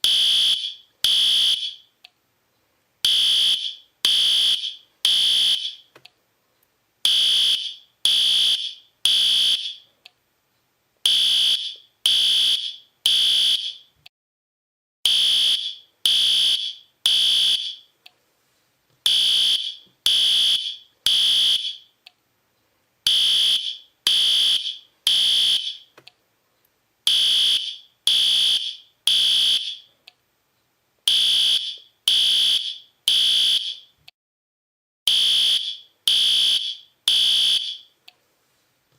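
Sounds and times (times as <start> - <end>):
fire alarm beeps: 0.0 - 1.9, 3.1 - 5.9, 7.1 - 9.8, 11.1 - 13.9, 15.1 - 17.9, 19.1 - 21.9, 23.1 - 25.9, 27.1 - 29.9, 31.1 - 33.9, 35.1 - 37.9.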